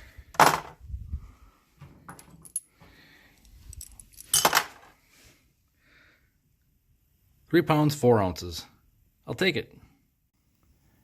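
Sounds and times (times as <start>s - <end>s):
metal parts clinking and clattering: 2.1s - 2.7s, 3.4s - 5.0s.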